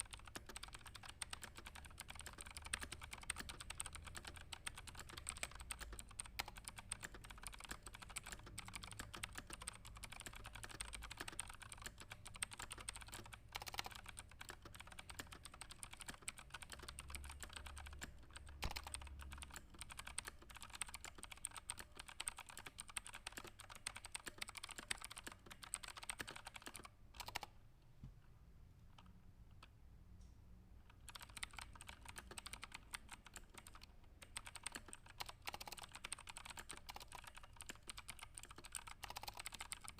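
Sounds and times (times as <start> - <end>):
fast typing on keyboard: 0.0 - 27.6, 30.9 - 39.9.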